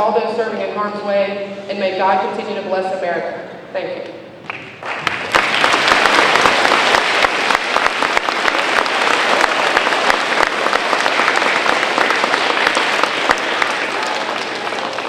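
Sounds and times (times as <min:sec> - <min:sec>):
crowd applauding: 0:04.4 - 0:15.0.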